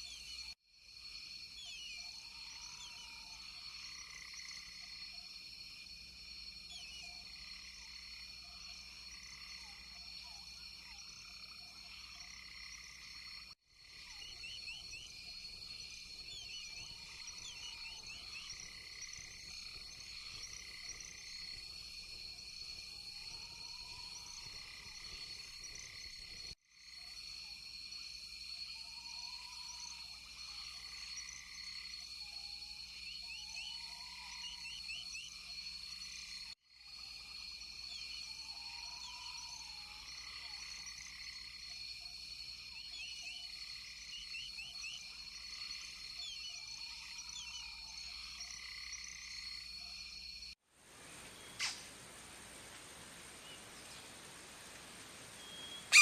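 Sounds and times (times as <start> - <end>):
frogs trilling and chirping: 0.0 - 50.6, 55.3 - 56.0
lower arched frog calls: 51.6 - 51.9.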